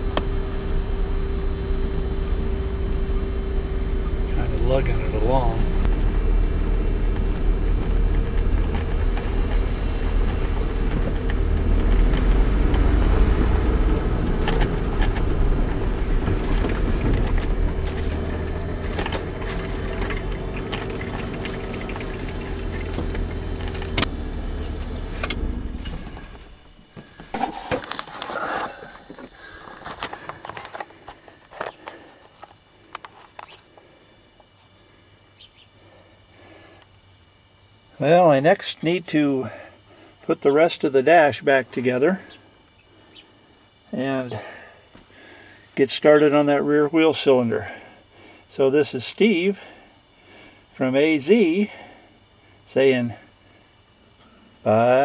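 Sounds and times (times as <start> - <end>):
truck engine running at low revs: 0.0 - 31.6.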